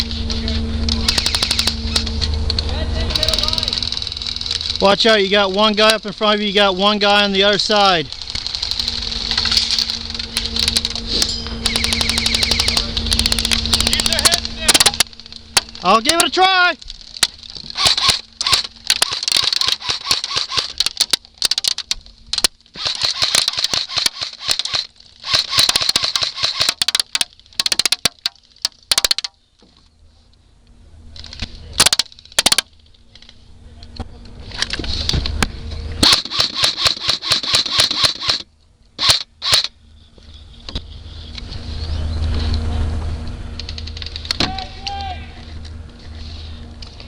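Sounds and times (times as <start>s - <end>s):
airsoft gun firing bursts: 1.0s - 2.0s, 11.6s - 16.3s, 17.8s - 21.7s, 22.8s - 28.2s, 36.0s - 38.4s.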